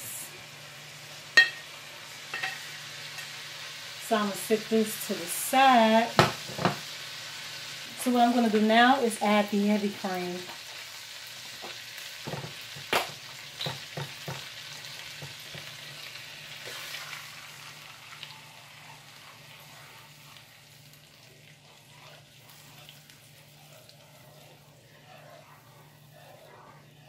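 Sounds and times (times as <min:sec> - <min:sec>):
cream sizzling in a skillet: 0:00.0 - 0:27.0
utensil knocking on pan: 0:01.4 - 0:01.6.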